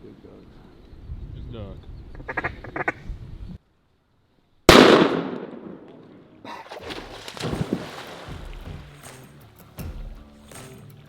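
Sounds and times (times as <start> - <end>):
shotgun blast: 4.7 - 6.2.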